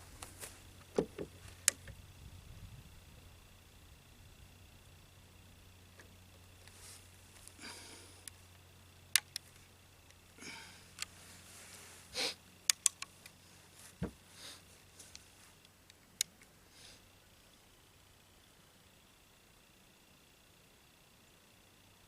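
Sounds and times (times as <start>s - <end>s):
breathing and sniffing: 6.8s - 8.3s, 10.4s - 12.4s, 14.3s - 14.7s
sharp metallic clicks: 9.1s - 10.2s, 12.6s - 13.4s.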